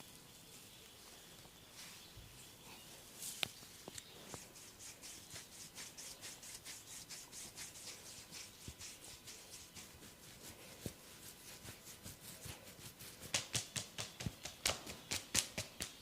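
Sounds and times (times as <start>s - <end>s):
fingers rubbing and scratching hair: 4.3s - 14.2s.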